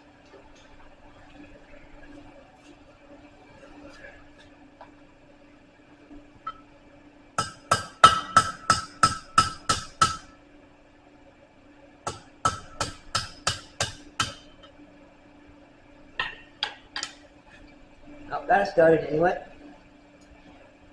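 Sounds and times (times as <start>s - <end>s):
hammer striking steel on anvil: 7.4s - 10.3s, 12.1s - 14.5s.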